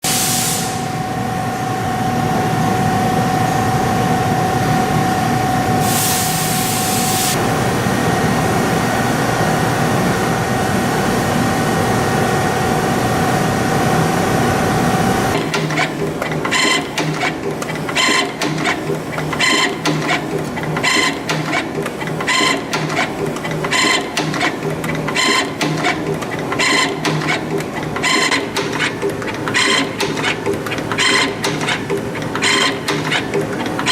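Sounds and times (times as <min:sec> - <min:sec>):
machine hum with thin whine: 0:00.6 - 0:33.9
machine clattering strokes: 0:15.3 - 0:33.9.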